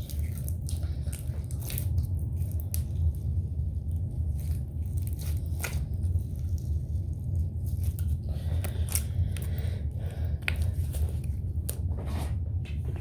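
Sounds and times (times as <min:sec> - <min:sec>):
slime squelching: 0:00.0 - 0:11.9
steady low hum: 0:00.0 - 0:13.0.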